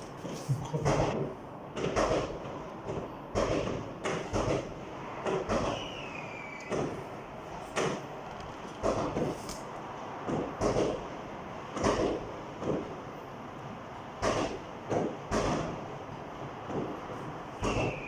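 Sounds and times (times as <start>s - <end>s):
faint falling firework whistle: 5.6s - 6.9s, 17.6s - 18.0s
fireworks banging: 17.6s - 18.0s.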